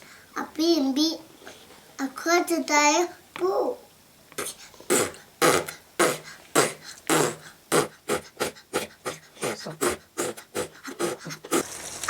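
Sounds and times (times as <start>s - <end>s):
person panting: 6.1s - 11.7s.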